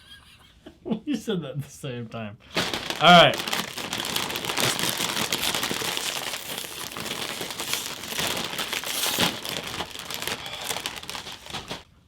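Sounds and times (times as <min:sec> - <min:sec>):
chip bags crinkling: 0:02.5 - 0:11.9.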